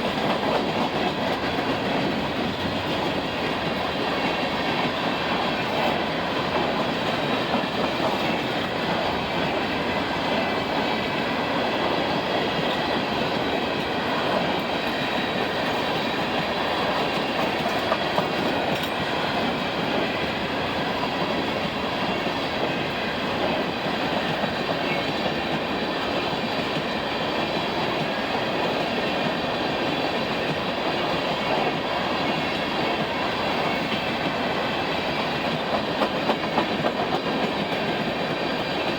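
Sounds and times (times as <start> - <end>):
freight train wheels clattering: 0.0 - 38.9.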